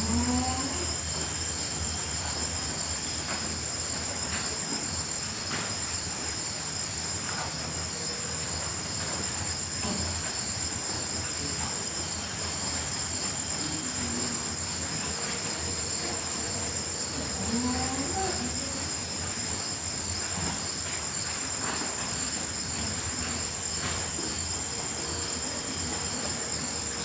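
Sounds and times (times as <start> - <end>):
background hiss: 0.0 - 27.0
crickets trilling: 0.0 - 27.0.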